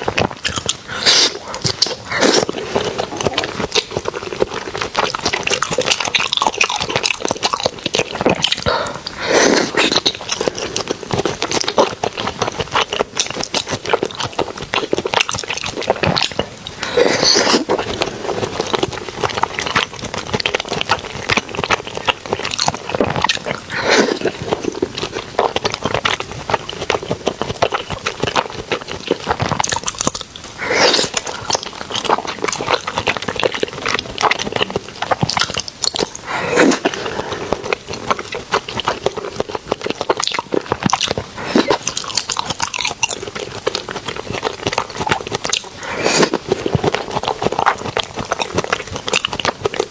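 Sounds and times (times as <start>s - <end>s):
chewing and biting food: 0.0s - 49.9s.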